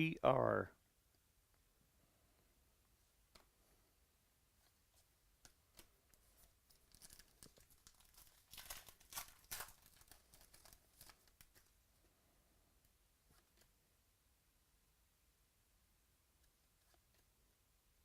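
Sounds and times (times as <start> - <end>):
card pack wrapper tearing: 6.7 - 11.7.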